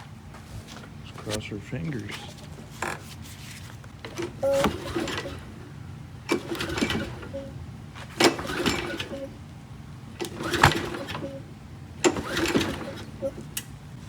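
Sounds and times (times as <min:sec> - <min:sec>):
lawn mower engine pull-starting: 0:04.1 - 0:05.6, 0:06.3 - 0:07.4, 0:08.1 - 0:09.3, 0:10.2 - 0:11.3, 0:12.0 - 0:13.3.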